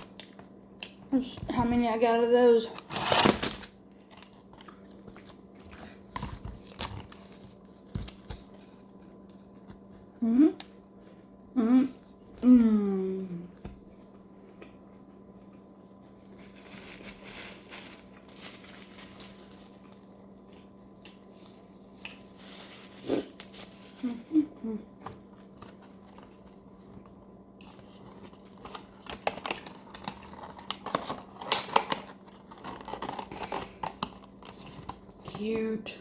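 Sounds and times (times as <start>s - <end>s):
steady low hum: 0.0s - 36.0s
food packaging crinkling: 2.6s - 10.1s, 16.0s - 24.5s, 25.2s - 35.5s.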